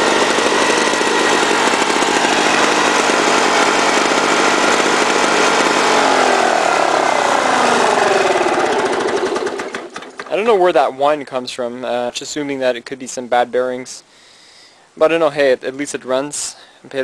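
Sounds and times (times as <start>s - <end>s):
engine whine: 0.0s - 10.3s
lawn mower two-stroke engine running: 0.0s - 10.5s.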